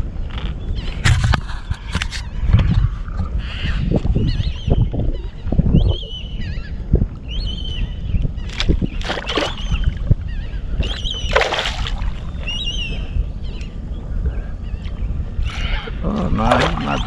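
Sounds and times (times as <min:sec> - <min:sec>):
low rumble of wind and water: 0:00.0 - 0:17.0
bird whistled calls: 0:07.3 - 0:13.7
fish splashing at the surface: 0:08.5 - 0:10.0, 0:11.2 - 0:12.3.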